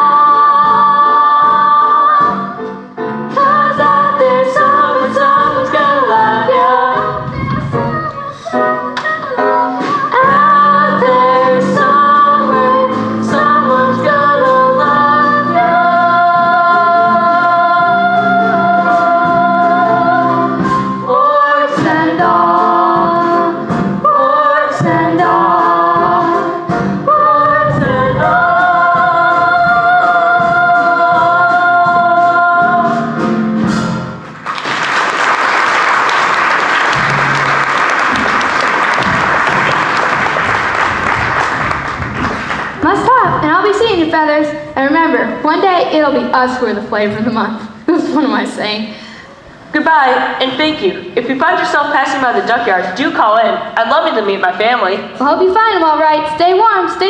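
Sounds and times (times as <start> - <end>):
backing track music: 0.0 - 47.9
audience applause: 34.3 - 42.8.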